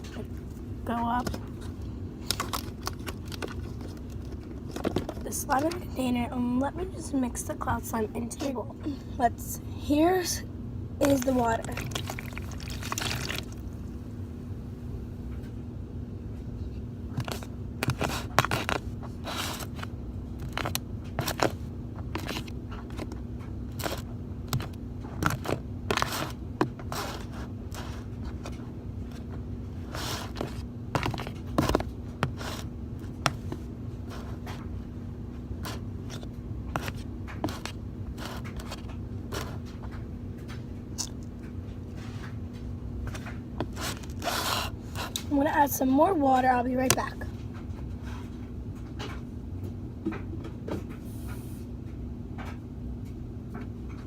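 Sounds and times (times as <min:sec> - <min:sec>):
faint steady hum: 0:00.0 - 0:54.0
utensil scraping a bowl: 0:43.6 - 0:45.2.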